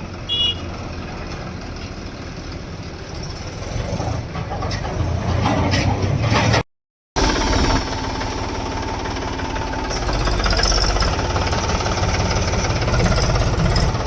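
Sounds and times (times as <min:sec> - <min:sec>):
diesel engine running: 0:07.2 - 0:14.0.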